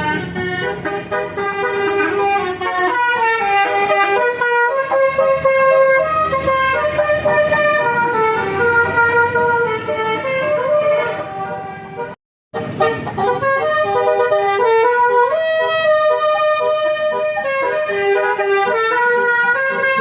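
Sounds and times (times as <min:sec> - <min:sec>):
multi-tone bus air horn: 0:00.0 - 0:20.0
vehicle engine running: 0:12.6 - 0:20.0.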